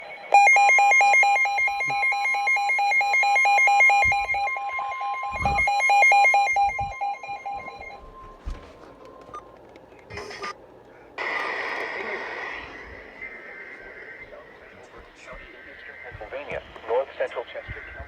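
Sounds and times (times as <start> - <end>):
rapid alarm beeping: 0.0 - 8.5
steady alarm tone: 0.0 - 8.6.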